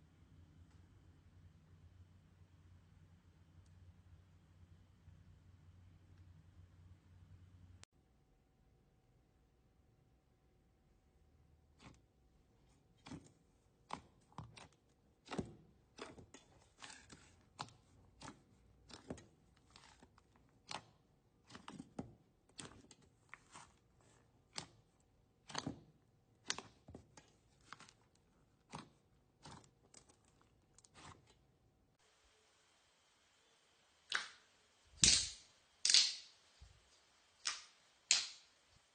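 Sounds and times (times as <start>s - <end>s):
slime clicking and popping: 35.0s - 36.2s.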